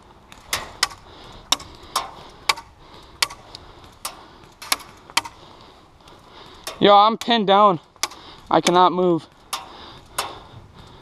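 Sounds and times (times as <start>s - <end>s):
airsoft gun cracks: 0.3s - 5.4s.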